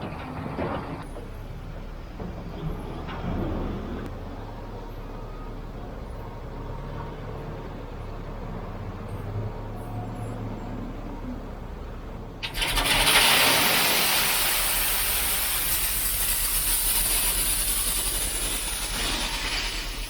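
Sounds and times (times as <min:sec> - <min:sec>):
low engine rumble: 0:00.0 - 0:20.0
loud rushing grinding noise: 0:12.4 - 0:20.0.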